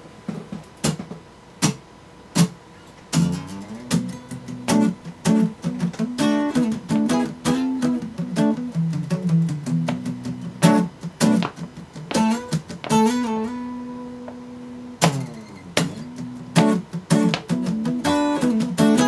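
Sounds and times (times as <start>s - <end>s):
guitar strumming bluesy riff: 2.4s - 19.0s
sharp count-in taps: 3.2s - 13.4s, 14.2s - 18.9s.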